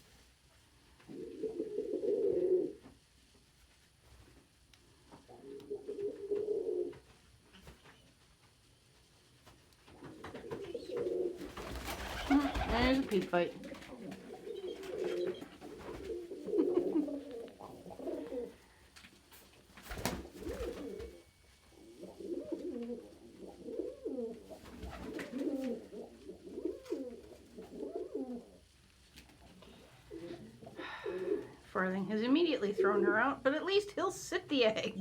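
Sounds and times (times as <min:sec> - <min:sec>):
pigeons cooing: 0:01.1 - 0:02.8, 0:05.3 - 0:07.0, 0:10.0 - 0:18.7, 0:20.2 - 0:28.8, 0:29.4 - 0:31.6.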